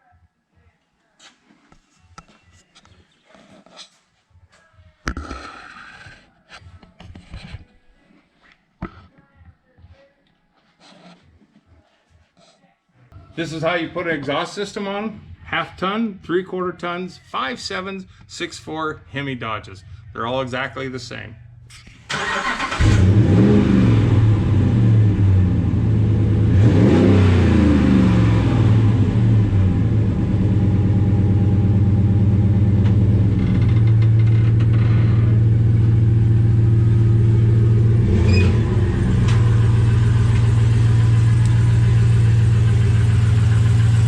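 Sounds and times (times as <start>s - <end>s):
truck engine idling and revving: 22.1s - 44.0s.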